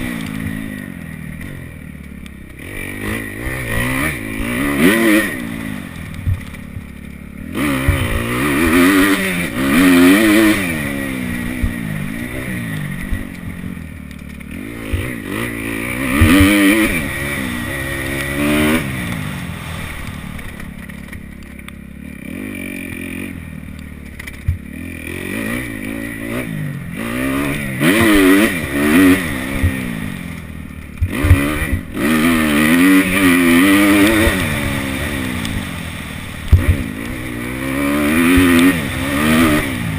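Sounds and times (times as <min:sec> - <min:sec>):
motocross bike engine revving: 0:00.0 - 0:39.9.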